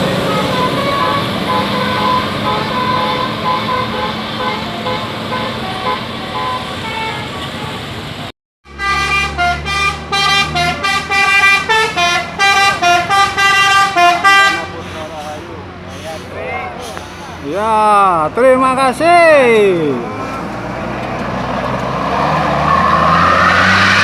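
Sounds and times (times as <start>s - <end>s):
musical bus horn tune: 0.0s - 8.0s, 8.6s - 15.0s
bus engine running: 0.0s - 19.0s.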